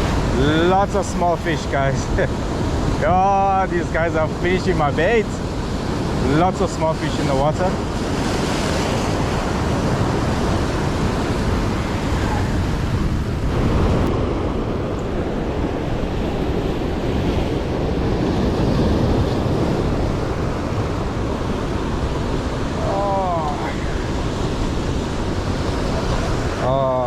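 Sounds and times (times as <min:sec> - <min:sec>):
surf breaking on rocks: 0:00.0 - 0:15.7
wind buffeting microphone: 0:00.0 - 0:26.6.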